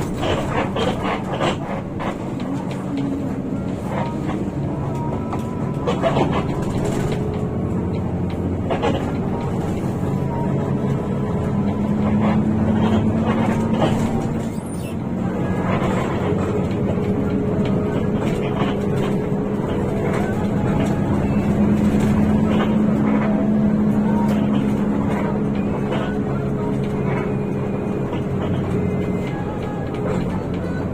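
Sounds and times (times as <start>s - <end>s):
bus diesel engine running: 0.0s - 30.9s
road and body noise: 0.0s - 30.9s.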